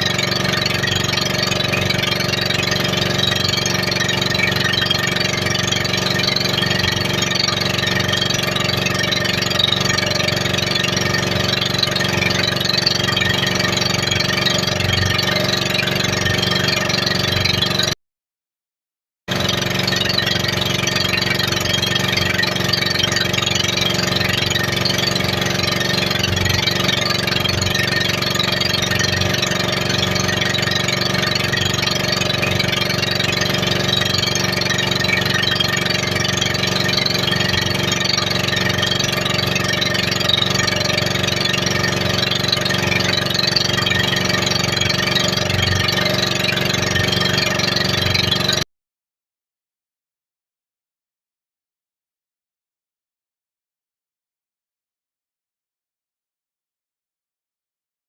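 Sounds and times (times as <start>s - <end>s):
motorboat engine droning: 0.0s - 18.0s, 19.3s - 48.7s.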